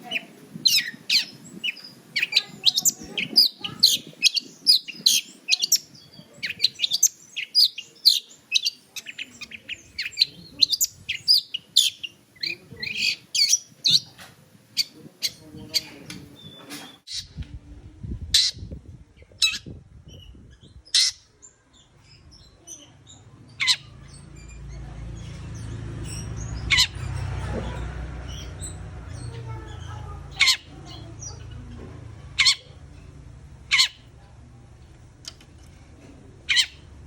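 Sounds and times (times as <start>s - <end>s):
low steady rumble: 17.2s - 20.9s, 21.8s - 37.0s.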